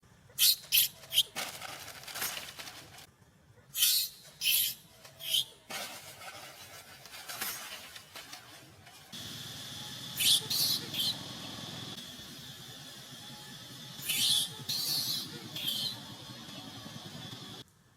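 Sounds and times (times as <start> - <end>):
baby monkey squealing: 0.4 - 1.4, 3.8 - 5.6, 10.2 - 11.4, 14.0 - 16.2
scuffling: 0.7 - 3.1, 5.0 - 9.2.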